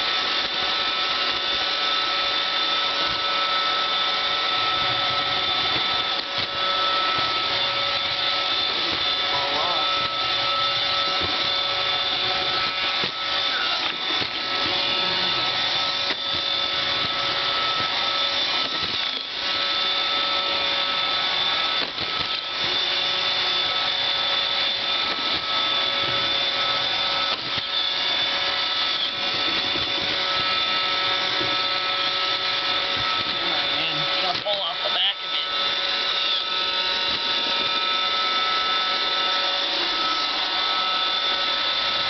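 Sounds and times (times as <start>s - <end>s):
robot vacuum motor and brush whine: 0.0s - 42.0s.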